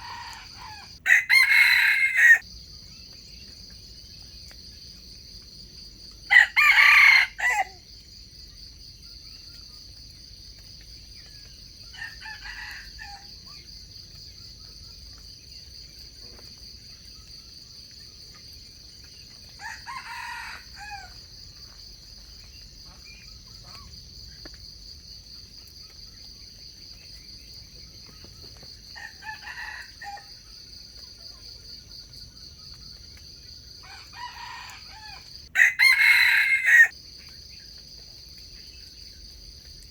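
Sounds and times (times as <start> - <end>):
roosters crowing: 0.0 - 2.4, 6.3 - 7.8, 11.9 - 13.4, 19.6 - 21.2, 29.0 - 30.3, 33.8 - 36.9.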